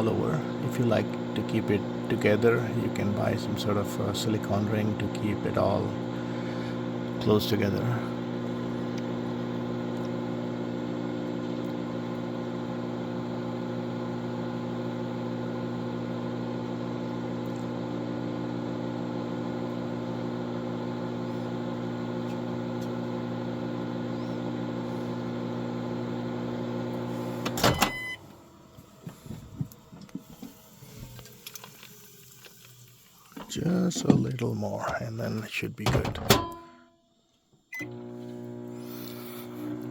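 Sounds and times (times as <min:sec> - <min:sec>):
microwave oven humming: 0:00.0 - 0:36.9, 0:37.7 - 0:39.9
microwave cutting off with clack: 0:24.2 - 0:28.6, 0:33.4 - 0:36.8, 0:37.8 - 0:38.6.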